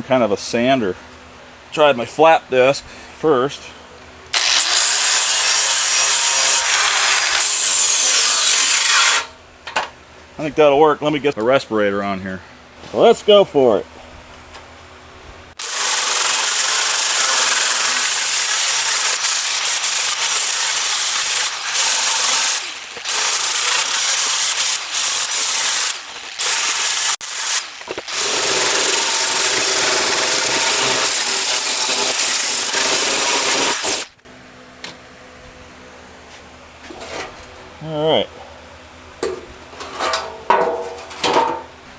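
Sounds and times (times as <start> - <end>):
power sander whining on metal: 4.4 - 9.3.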